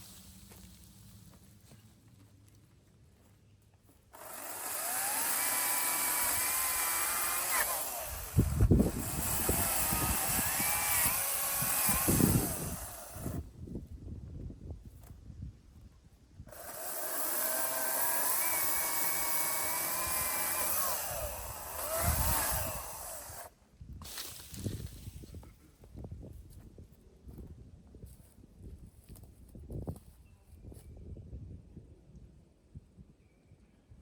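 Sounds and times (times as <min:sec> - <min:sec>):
chainsaw cutting wood: 0:04.1 - 0:13.4, 0:16.5 - 0:25.2.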